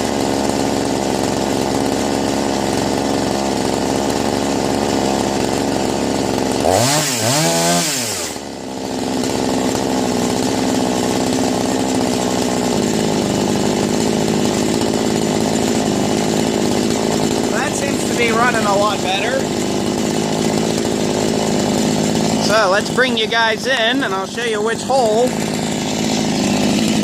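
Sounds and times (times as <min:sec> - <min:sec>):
chainsaw engine revving and idling: 0:00.0 - 0:27.0.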